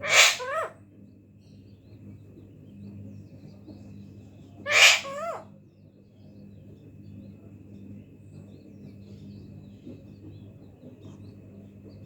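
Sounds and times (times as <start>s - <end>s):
parakeet imitating a sneeze: 0.0s - 0.6s
parakeet call: 0.0s - 0.8s, 4.7s - 5.5s.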